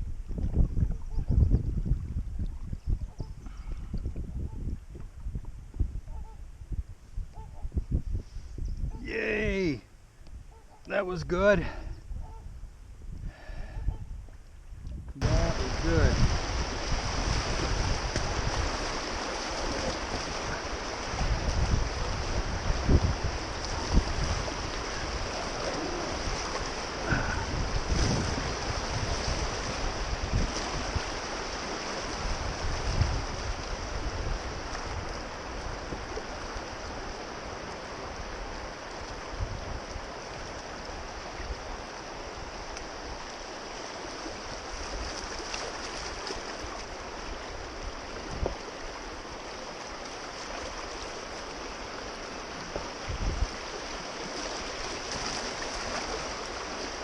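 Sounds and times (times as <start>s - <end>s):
wind buffeting microphone: 0.0s - 9.1s, 10.1s - 43.2s, 44.2s - 49.3s, 50.6s - 57.0s
river water rushing: 15.2s - 57.0s.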